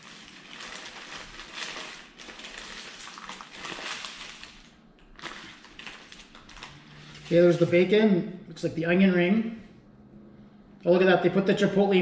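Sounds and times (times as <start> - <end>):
paper wrapper rustling: 0.0 - 7.8.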